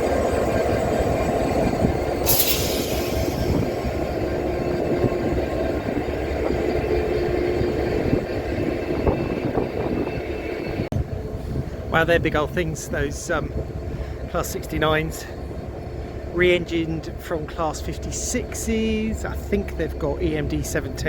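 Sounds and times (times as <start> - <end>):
diesel locomotive idling: 0.0 - 21.0
air hiss: 2.3 - 4.0.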